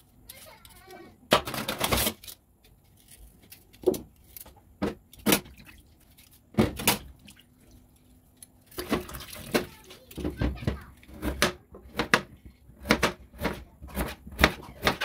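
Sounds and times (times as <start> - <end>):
utensils clattering and knocking: 0.2 - 5.6.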